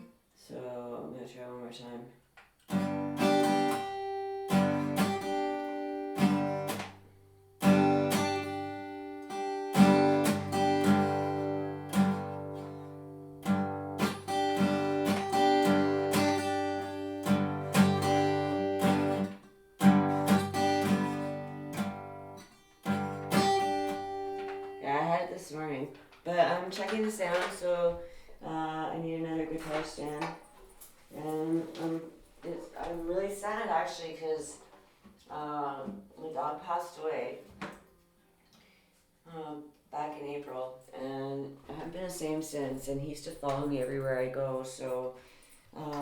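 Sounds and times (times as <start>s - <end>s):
acoustic guitar strumming: 2.7s - 34.0s.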